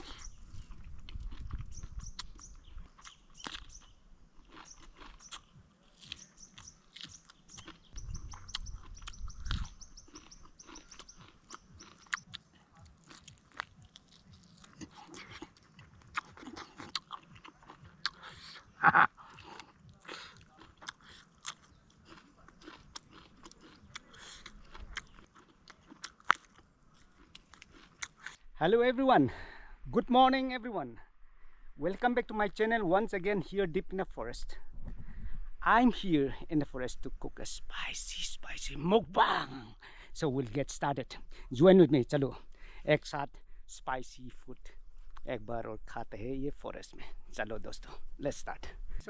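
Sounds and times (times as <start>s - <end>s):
person chewing crunchy food: 0.0s - 28.4s.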